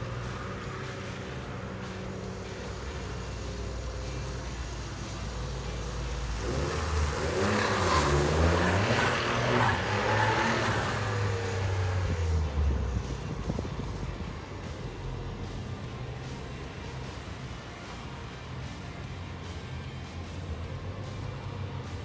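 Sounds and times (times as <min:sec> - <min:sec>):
engine idling and revving: 0:00.0 - 0:22.0.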